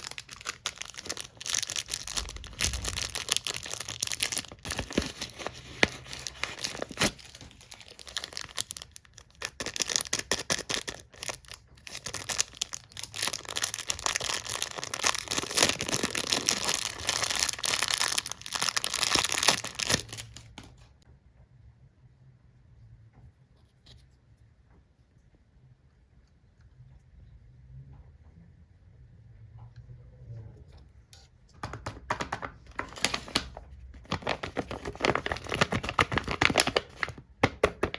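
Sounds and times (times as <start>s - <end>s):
packaging tearing and crinkling: 0.0s - 20.8s, 32.7s - 37.2s.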